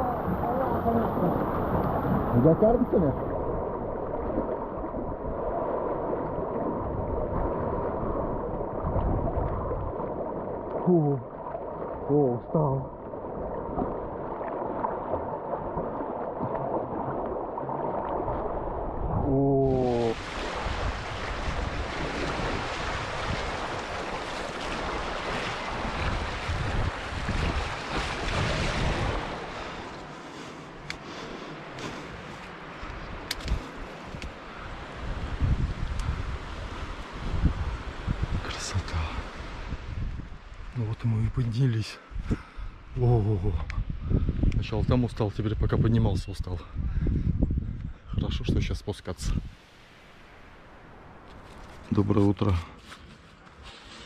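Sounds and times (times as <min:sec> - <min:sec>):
wind on microphone: 0:00.0 - 0:11.0, 0:15.1 - 0:29.8, 0:32.8 - 0:41.4, 0:42.0 - 0:49.6
ocean surf washing on rocks: 0:00.0 - 0:40.8.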